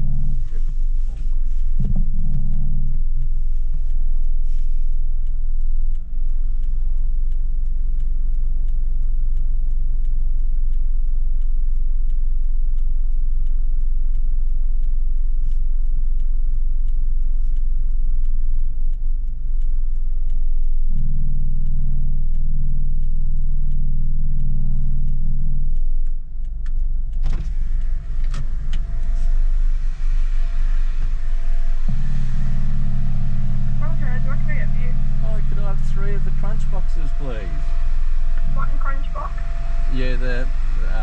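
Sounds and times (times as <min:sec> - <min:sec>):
car engine rumbling: 0:00.0 - 0:41.0.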